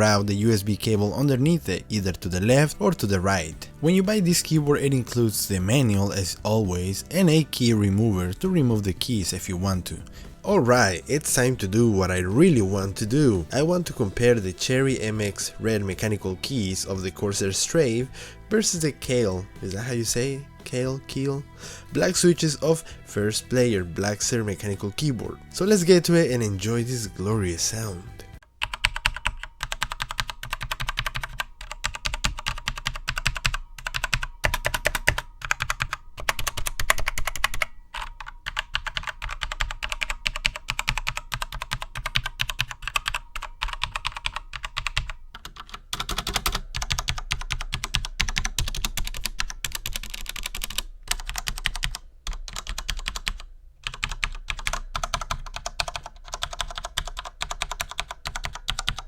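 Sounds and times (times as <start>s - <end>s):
fast typing on mechanical keyboard: 28.6s - 59.0s.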